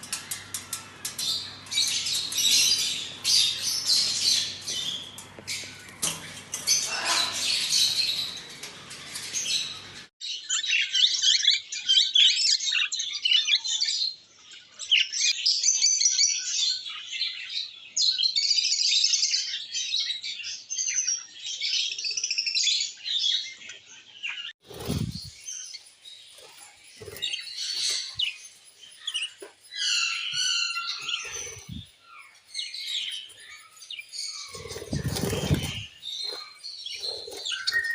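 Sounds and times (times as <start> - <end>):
parrots chirping and chattering: 0.0 - 11.1, 24.3 - 37.9.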